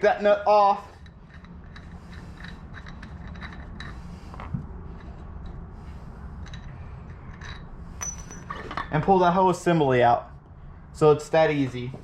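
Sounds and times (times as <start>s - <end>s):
low steady hum: 0.0s - 12.0s
metallic clicks and scrapes: 1.0s - 5.6s.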